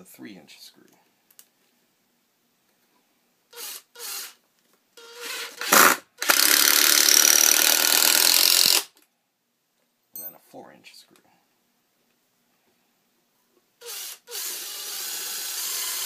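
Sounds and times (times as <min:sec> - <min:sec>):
impact driver motor spinning: 0:13.8 - 0:16.0.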